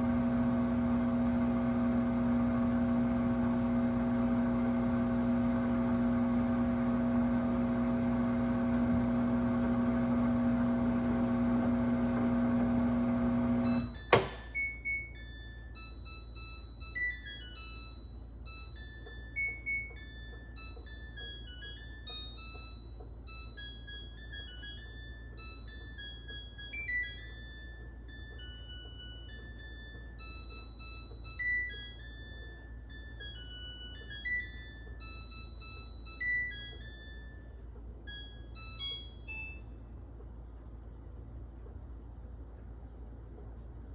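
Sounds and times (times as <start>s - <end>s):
washing machine buzzing: 0.0s - 43.9s
high electronic beeps melody: 13.7s - 39.8s
washing machine click: 14.0s - 14.6s.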